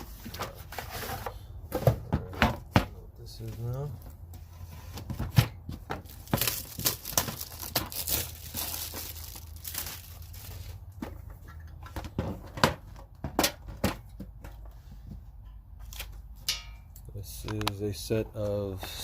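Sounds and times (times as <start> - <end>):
plastic packaging crinkling and tearing: 6.0 - 10.8.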